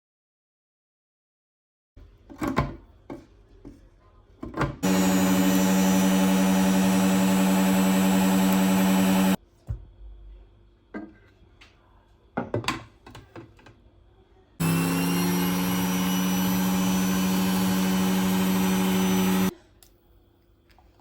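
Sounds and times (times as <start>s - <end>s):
small electric motor running: 4.8s - 9.4s, 14.6s - 19.5s.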